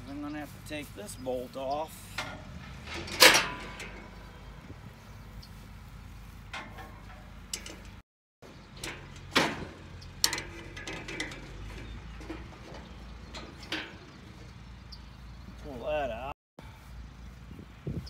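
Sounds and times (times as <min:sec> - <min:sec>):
metal clinks and clanks: 0:02.2 - 0:04.4, 0:06.5 - 0:08.0, 0:08.7 - 0:14.6.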